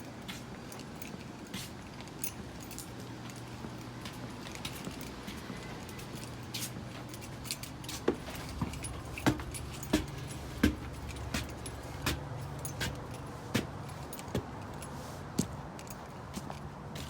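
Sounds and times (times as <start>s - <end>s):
metal tools knocking on pipes: 7.7s - 14.8s.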